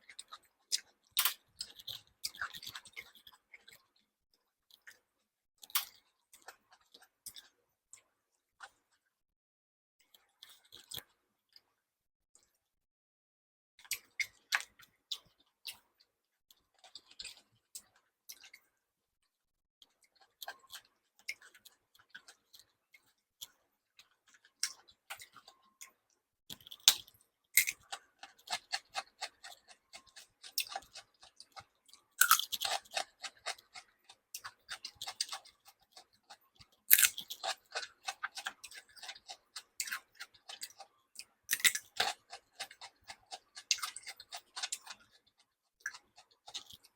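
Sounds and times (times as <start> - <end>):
person chewing and biting food: 26.6 - 46.9.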